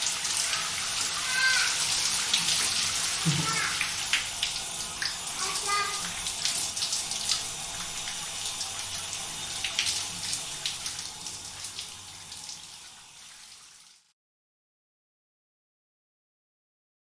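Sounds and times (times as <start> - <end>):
water splashes: 0.0 - 9.0
shower spray running: 0.0 - 14.1.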